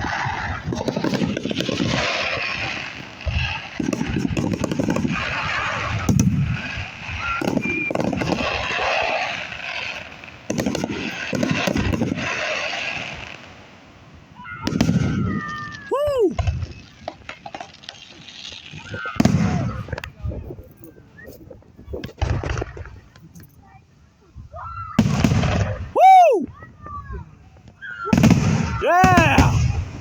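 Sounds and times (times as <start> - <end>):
fireworks booming and crackling: 0.0 - 20.8, 21.5 - 23.2, 24.9 - 30.0
crowd voices: 25.9 - 26.8.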